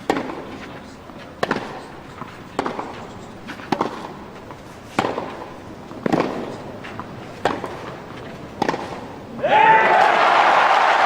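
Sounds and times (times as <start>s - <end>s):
tennis ball struck by racquets: 0.0s - 0.8s, 1.4s - 9.2s.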